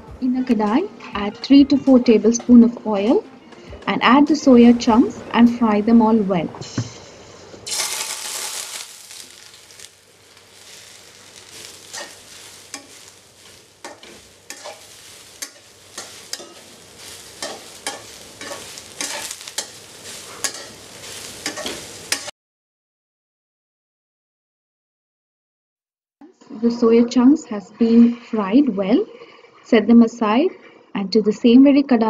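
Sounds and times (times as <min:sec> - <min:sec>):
food sizzling in oil: 0:07.6 - 0:22.3
spatula scraping pan: 0:07.7 - 0:22.3.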